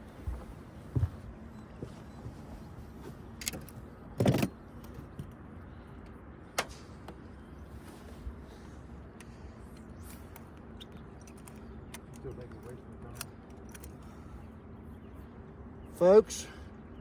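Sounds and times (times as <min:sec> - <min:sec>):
faint low hum: 0:00.0 - 0:17.0
knocks and clicks of handling gear: 0:01.8 - 0:05.4, 0:09.1 - 0:14.1.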